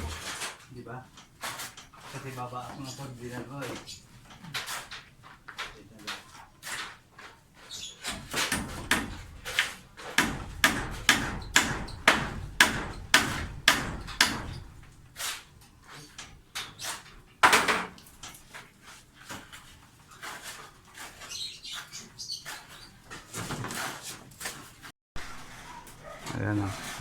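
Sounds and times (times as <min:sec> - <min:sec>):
sharp knocks: 0:08.2 - 0:14.9, 0:17.4 - 0:18.0.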